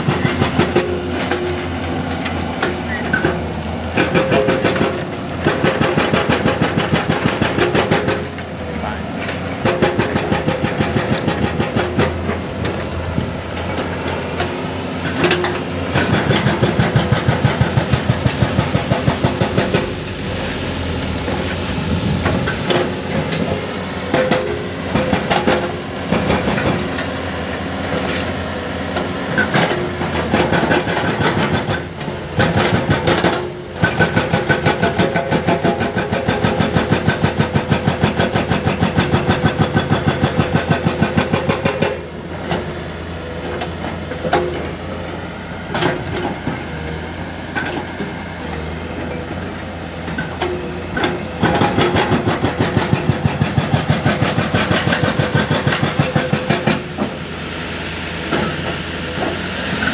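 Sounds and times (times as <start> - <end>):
hydraulic breaker hammering: 0.0 - 8.5, 9.6 - 13.3, 21.3 - 27.0, 29.3 - 42.7, 50.2 - 57.2
diesel excavator engine running: 0.0 - 59.9.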